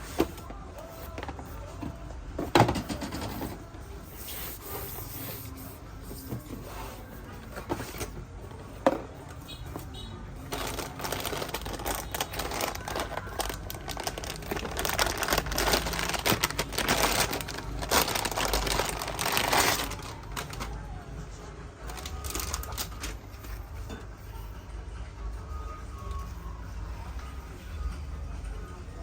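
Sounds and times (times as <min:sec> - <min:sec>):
packaging crinkling and rustling: 0:10.4 - 0:21.0, 0:21.9 - 0:23.6.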